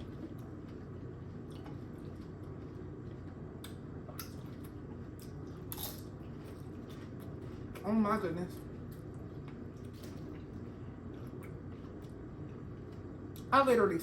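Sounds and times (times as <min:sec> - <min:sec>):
wet chewing sounds: 0:00.0 - 0:07.8
steady low background hum: 0:00.0 - 0:14.0.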